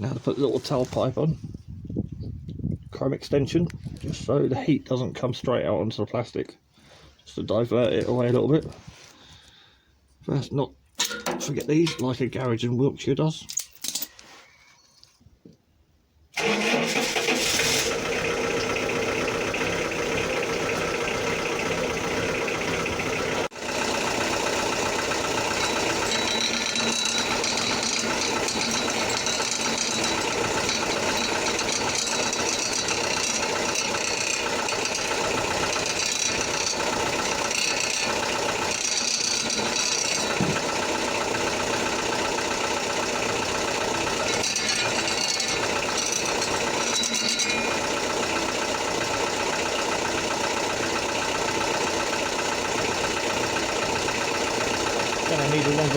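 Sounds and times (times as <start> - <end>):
engine running with rattle: 16.4 - 55.9.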